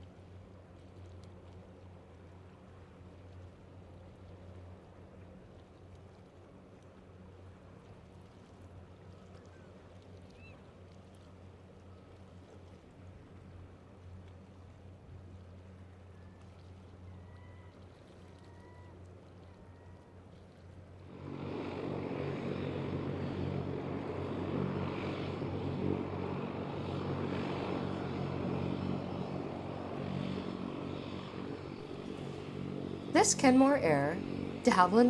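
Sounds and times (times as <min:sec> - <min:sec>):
propeller engine: 0:21.0 - 0:35.0.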